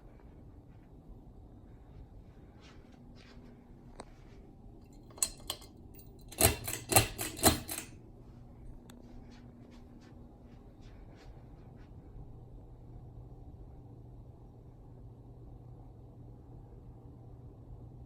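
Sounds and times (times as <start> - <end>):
faint steady hum: 0.0 - 18.0
pull chain clacking and rattling: 5.0 - 7.9
pull chain switch clicks: 5.0 - 7.9.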